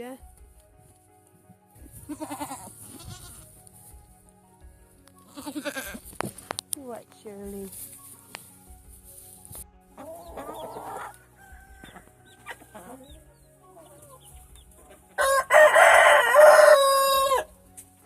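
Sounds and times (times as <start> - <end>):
chickens clucking: 9.1 - 17.5
rooster crowing: 10.3 - 13.0, 15.2 - 17.5.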